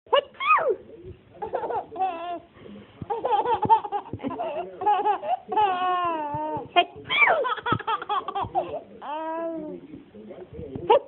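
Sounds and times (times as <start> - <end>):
baby giggling and squealing: 3.1 - 9.6.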